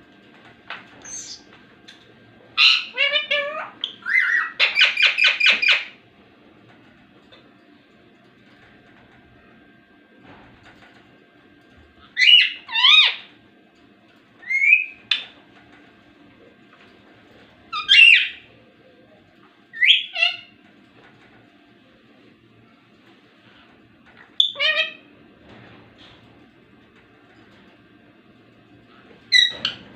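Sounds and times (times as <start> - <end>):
parakeet high-pitched calls: 1.0 - 1.5, 2.6 - 6.0, 12.2 - 13.3, 14.4 - 15.2, 17.7 - 18.5, 19.7 - 20.6, 24.4 - 25.1, 29.3 - 29.8.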